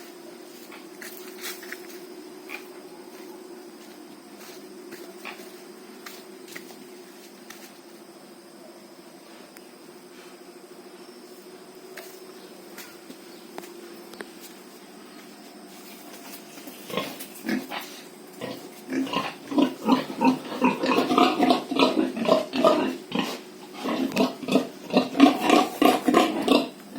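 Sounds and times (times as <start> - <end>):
pigs grunting: 16.8 - 26.9.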